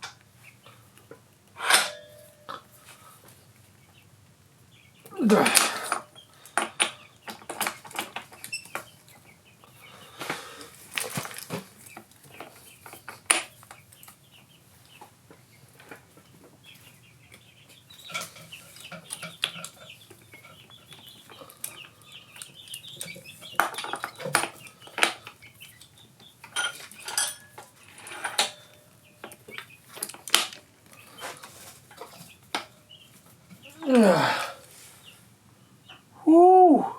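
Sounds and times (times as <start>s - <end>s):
hand tools clanking on metal: 1.6s - 2.6s, 5.2s - 8.9s, 26.4s - 30.6s.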